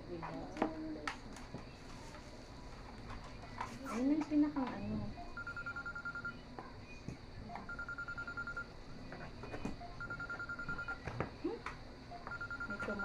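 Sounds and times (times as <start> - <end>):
pulsing electronic phone ringtone: 5.3 - 6.4, 7.7 - 8.7, 9.9 - 11.0, 12.2 - 13.0.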